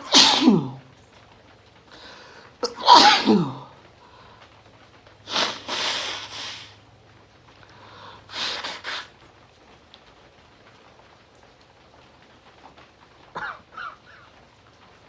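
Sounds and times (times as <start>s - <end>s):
man sneezing: 0.0s - 0.8s, 2.6s - 3.7s
noisy breaths through nose: 5.3s - 6.8s.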